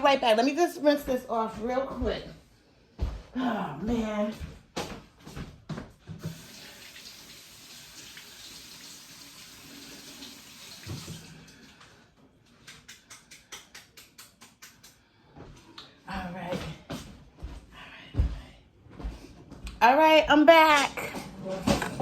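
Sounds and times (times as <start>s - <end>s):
faucet running into sink: 6.2s - 11.6s.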